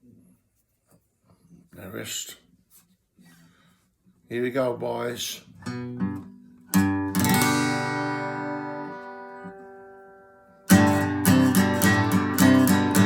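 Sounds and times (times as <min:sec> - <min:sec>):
acoustic guitar strumming: 0:05.6 - 0:13.0.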